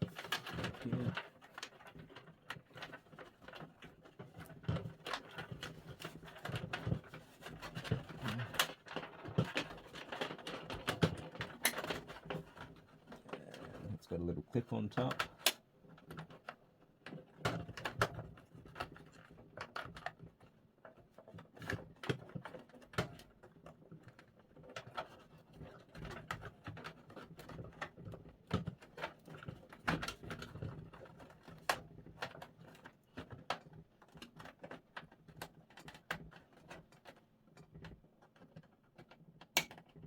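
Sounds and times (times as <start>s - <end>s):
cable clicking and rustling: 0.0s - 40.0s.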